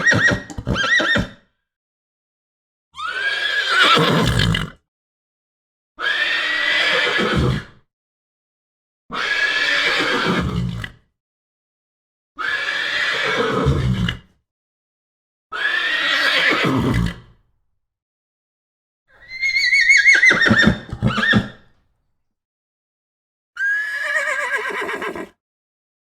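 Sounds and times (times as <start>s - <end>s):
horse neighing: 0.0s - 1.4s, 3.0s - 4.5s, 15.6s - 17.2s, 19.2s - 21.7s, 23.6s - 25.4s.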